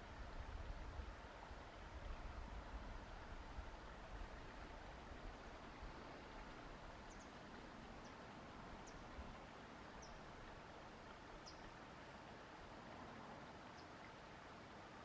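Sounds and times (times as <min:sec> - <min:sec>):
faint outdoor hiss: 0:00.0 - 0:15.0
small birds chirping: 0:11.4 - 0:11.7.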